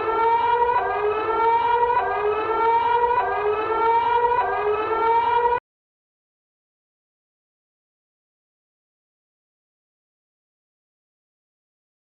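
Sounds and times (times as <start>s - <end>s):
emergency alert siren tone: 0.0s - 5.6s.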